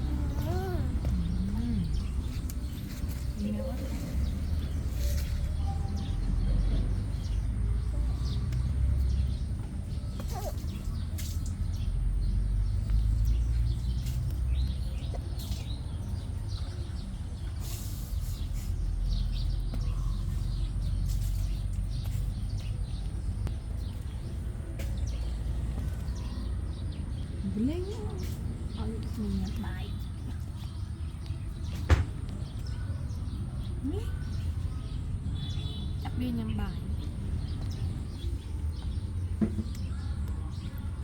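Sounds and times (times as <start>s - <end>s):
faint chirps and clicks: 29.0s - 31.6s.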